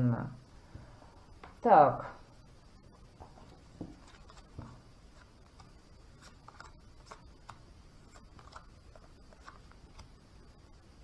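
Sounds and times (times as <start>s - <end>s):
cards rustling and clicking: 3.3s - 10.2s.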